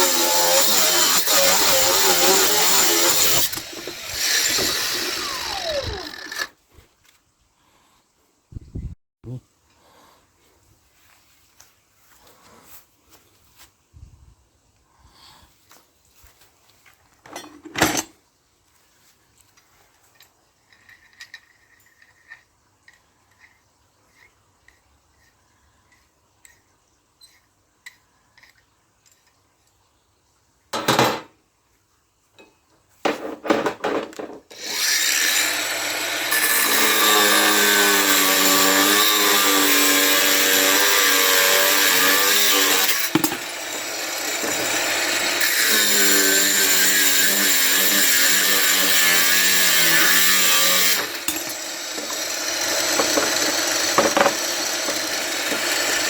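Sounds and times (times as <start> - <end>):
power tool cutting brass: 0.0 - 6.6, 34.5 - 56.0.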